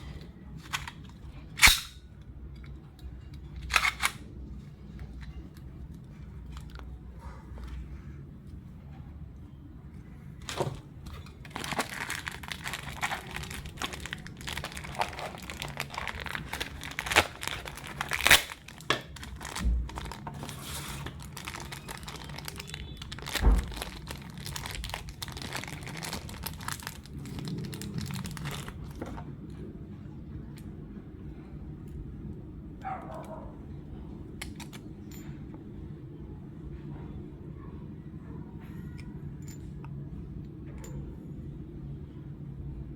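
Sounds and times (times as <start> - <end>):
plastic packaging crinkling: 11.1 - 29.1.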